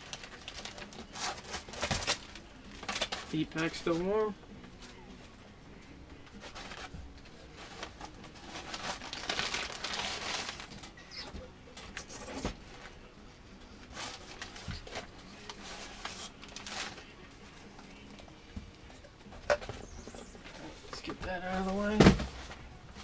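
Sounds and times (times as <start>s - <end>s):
packing material rustling: 0.0s - 4.2s, 6.4s - 11.2s, 13.8s - 17.2s.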